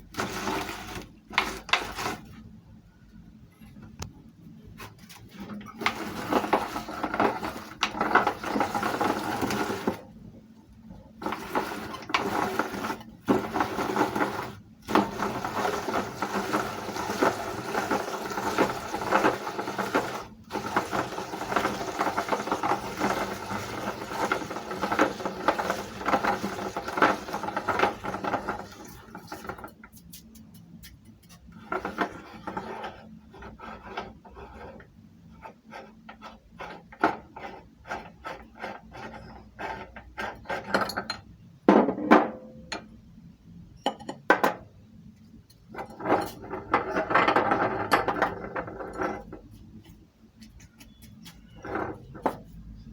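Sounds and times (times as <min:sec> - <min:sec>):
meat grinder grinding: 0:00.0 - 0:02.3, 0:05.7 - 0:10.1, 0:11.2 - 0:29.6.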